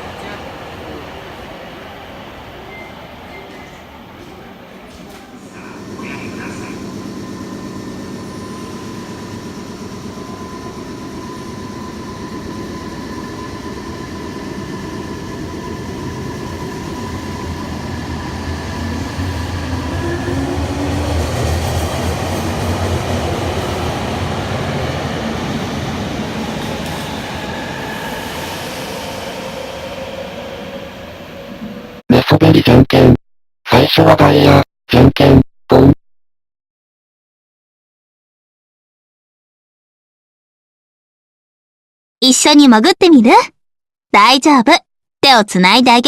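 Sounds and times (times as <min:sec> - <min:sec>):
subway train rumbling: 0:00.0 - 0:32.0.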